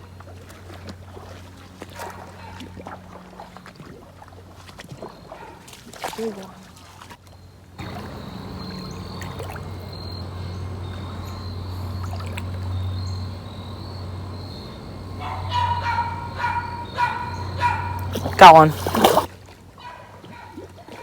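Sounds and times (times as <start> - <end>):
creek water running: 0.0 - 21.0
dog whining: 15.1 - 19.3.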